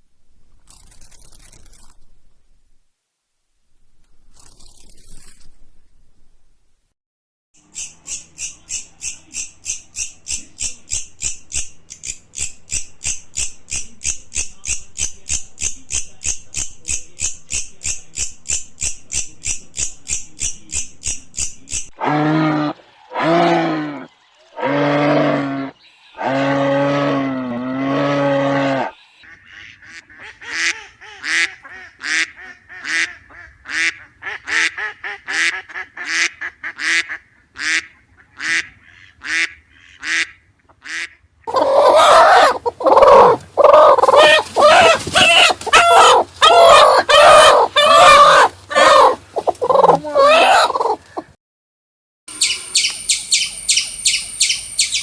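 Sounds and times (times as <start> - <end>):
long low animal calls: 22.0 - 29.0, 41.5 - 51.3
fast high animal trill: 41.5 - 51.0
short repeated animal calls: 41.5 - 51.3.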